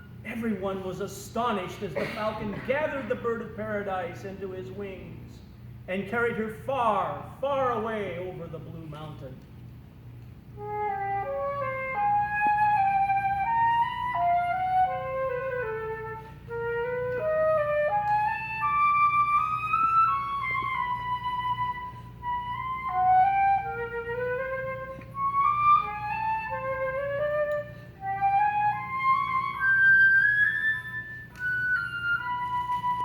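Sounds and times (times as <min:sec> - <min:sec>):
flute melody: 0:10.5 - 0:33.0.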